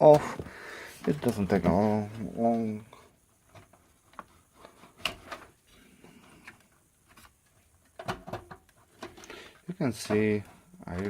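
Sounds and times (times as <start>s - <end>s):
clicks and knocks of pc parts: 3.5s - 5.6s, 6.4s - 9.3s, 9.9s - 11.0s.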